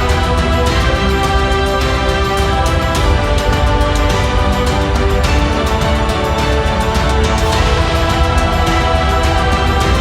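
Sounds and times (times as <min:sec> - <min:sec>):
synth music with heavy beat: 0:00.0 - 0:10.0.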